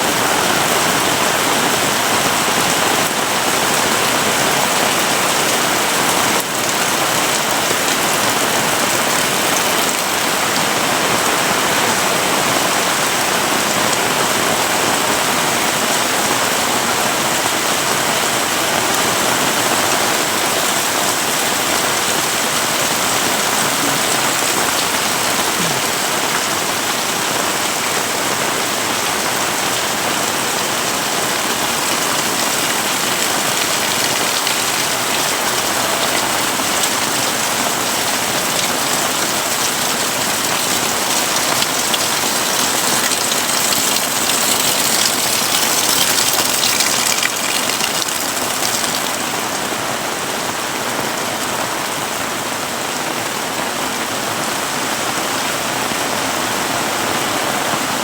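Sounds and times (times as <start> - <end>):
heavy rain pattering: 0.0 - 58.0.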